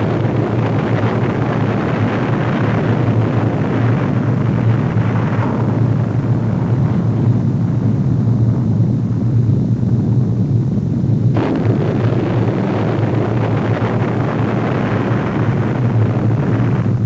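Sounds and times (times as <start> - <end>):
deep explosion rumble: 0.0 - 17.0
harsh explosion blast: 0.0 - 17.0.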